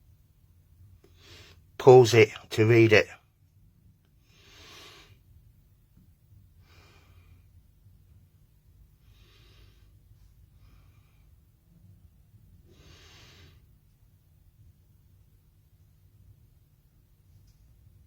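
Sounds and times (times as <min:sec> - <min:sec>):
faint low hum: 0:00.0 - 0:18.0
soft breaths: 0:01.0 - 0:01.8, 0:04.1 - 0:05.5, 0:06.4 - 0:14.1.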